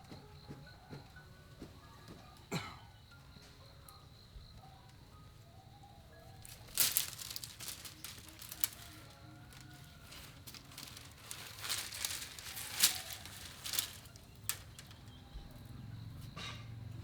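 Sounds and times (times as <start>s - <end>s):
bamboo strips rustling and crackling: 4.6s - 15.7s.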